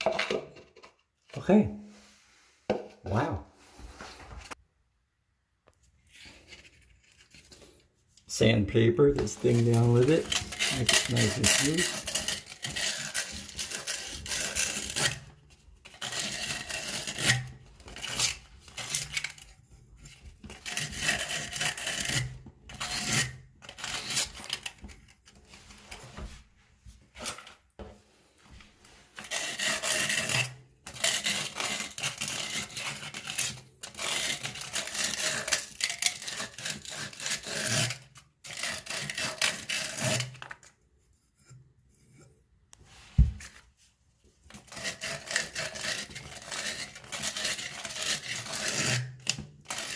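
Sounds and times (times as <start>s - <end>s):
sandpaper rubbing on metal pipe: 9.3s - 15.2s, 28.9s - 40.3s, 44.6s - 49.1s.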